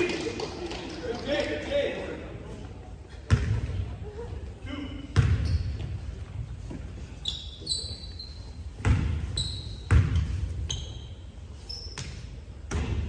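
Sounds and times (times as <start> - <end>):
sneakers squeaking: 2.5 - 13.0
basketball bouncing on court: 3.3 - 3.8, 5.1 - 6.0, 8.7 - 11.0, 12.0 - 13.0.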